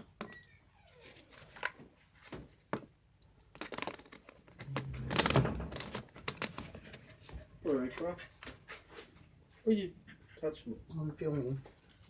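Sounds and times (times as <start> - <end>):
rustling: 3.5 - 9.8, 11.4 - 12.0.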